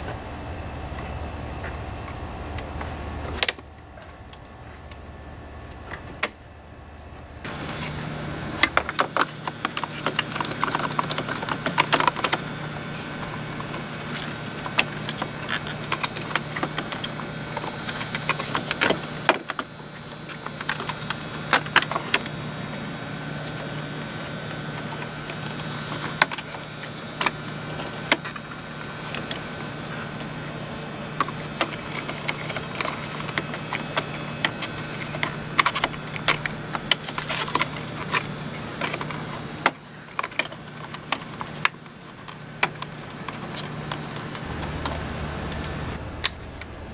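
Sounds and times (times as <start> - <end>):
steady low hum: 0.0 - 46.9.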